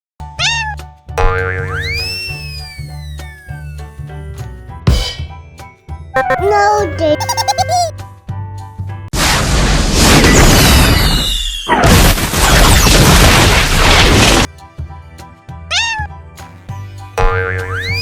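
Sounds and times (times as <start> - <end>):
cartoon background music: 0.2 - 8.1, 15.5 - 18.0
meow-like cat cry: 0.3 - 0.8, 15.7 - 16.2.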